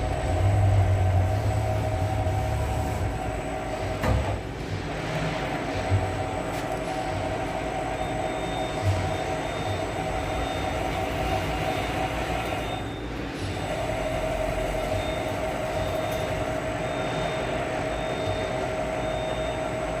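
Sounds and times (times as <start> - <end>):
machine whine: 0.0 - 20.0
mechanical hum: 0.0 - 20.0.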